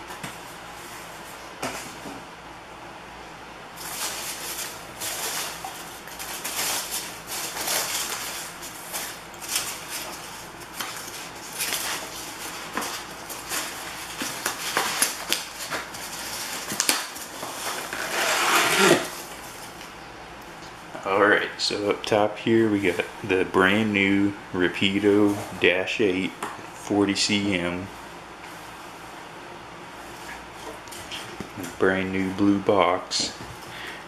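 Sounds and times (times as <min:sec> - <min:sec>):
cardboard and packing rustling: 0:03.8 - 0:19.8.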